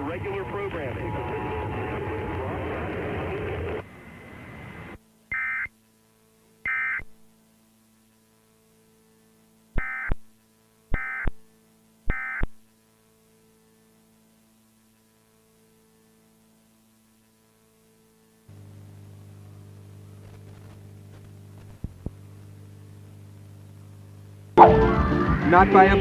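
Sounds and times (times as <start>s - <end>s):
faint steady hum: 0.0s - 26.0s
digital data tone bursts: 5.3s - 5.7s, 6.6s - 7.2s, 9.8s - 10.3s, 10.9s - 11.4s, 12.1s - 12.6s.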